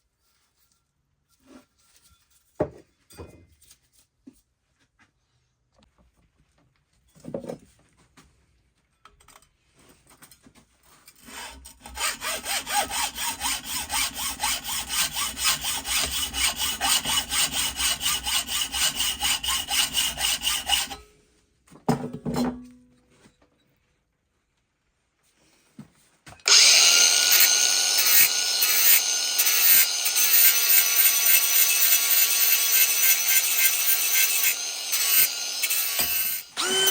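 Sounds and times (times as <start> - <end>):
hand tool scraping metal: 11.0 - 21.0, 26.4 - 36.9.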